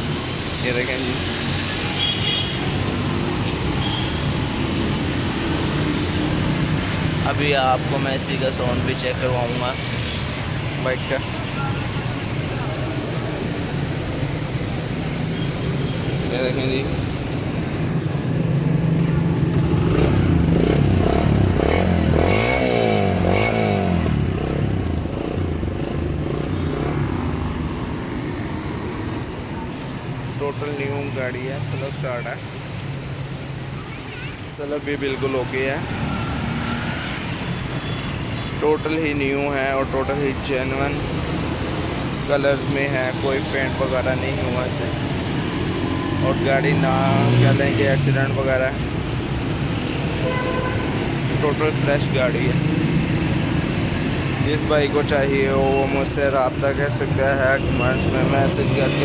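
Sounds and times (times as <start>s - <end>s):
road traffic rumble: 0.0s - 59.0s
motorcycle engine idling and revving: 17.1s - 31.2s.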